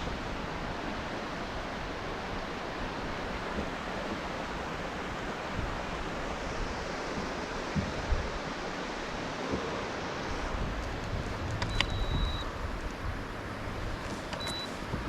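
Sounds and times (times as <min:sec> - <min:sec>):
water rushing: 0:00.0 - 0:15.0
wind rushing: 0:10.3 - 0:15.0
low thumps: 0:10.5 - 0:15.0.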